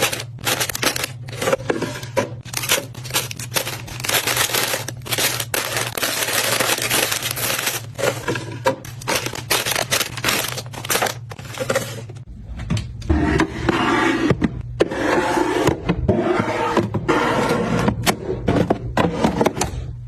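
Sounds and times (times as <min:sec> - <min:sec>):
plastic packaging crinkling: 0:00.0 - 0:01.5, 0:02.4 - 0:12.1
grocery handling noise: 0:00.0 - 0:20.0.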